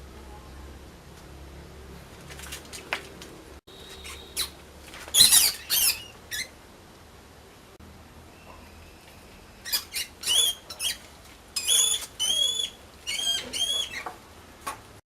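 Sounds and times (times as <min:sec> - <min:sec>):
mouse squeaking: 0:03.8 - 0:06.6, 0:09.6 - 0:14.1.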